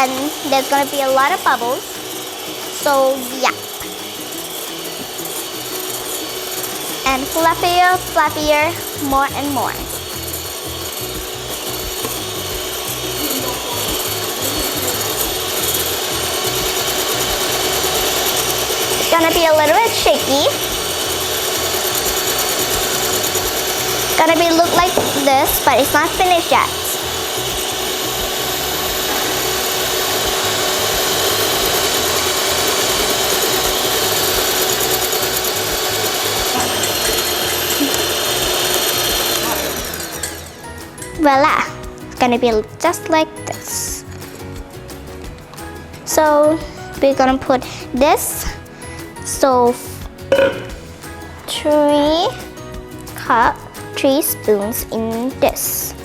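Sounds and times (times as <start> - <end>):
electric mixer motor hum: 0.0 - 41.9
beaters scraping a bowl: 0.0 - 44.6, 45.2 - 56.0.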